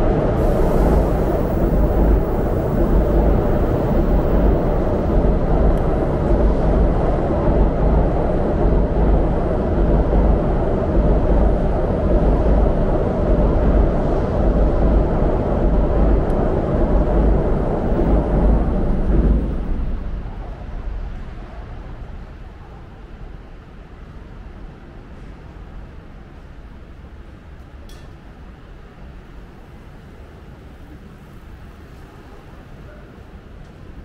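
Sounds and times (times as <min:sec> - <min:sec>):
wind rumbling on microphone: 0:00.0 - 0:24.6
city traffic noise: 0:00.0 - 0:34.0.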